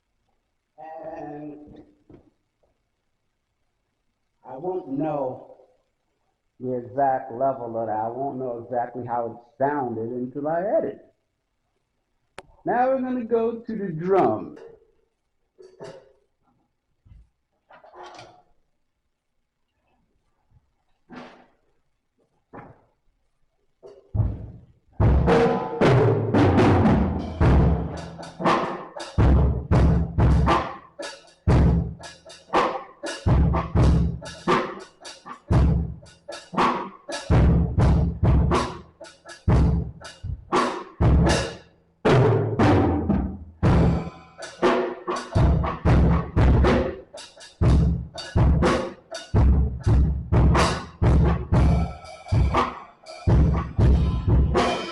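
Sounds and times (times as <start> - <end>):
drum kit playing: 24.2 - 54.9
snare drum strokes: 34.4 - 35.4
bass drum strokes: 49.4 - 52.7, 53.3 - 54.9.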